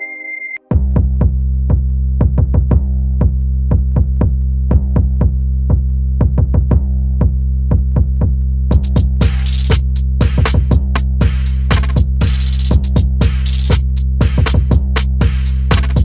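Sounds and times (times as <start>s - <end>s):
held synth note: 0.0s - 0.7s
drum machine beat: 0.7s - 16.0s
steady low bass: 0.7s - 16.0s.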